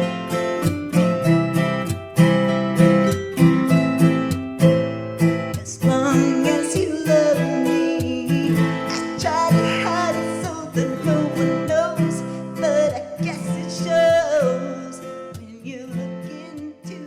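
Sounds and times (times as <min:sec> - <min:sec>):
strummed acoustic guitar: 0:00.0 - 0:17.0
person singing: 0:05.6 - 0:17.0.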